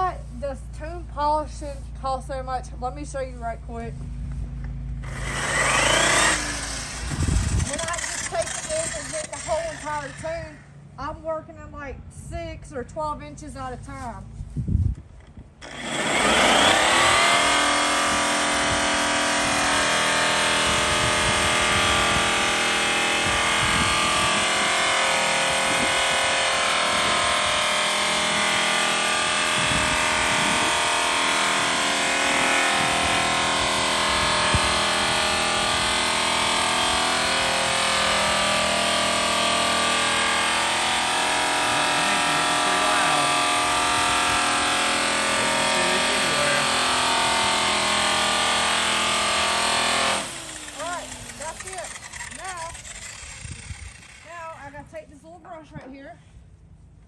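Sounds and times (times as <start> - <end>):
rotary polisher whining: 5.0 - 10.4, 15.6 - 54.6.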